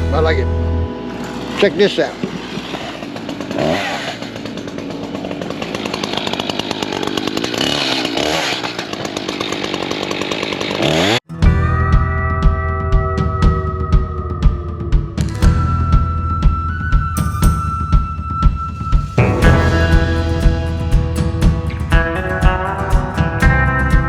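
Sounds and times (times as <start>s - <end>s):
chainsaw cutting: 0.0s - 11.3s, 19.2s - 23.8s
music with drum beats: 11.3s - 24.0s.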